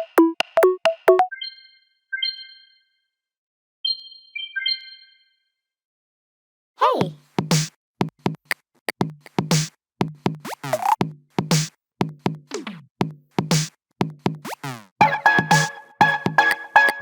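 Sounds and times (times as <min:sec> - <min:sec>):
electronic ringtone beat: 0:00.0 - 0:01.6, 0:15.0 - 0:17.0.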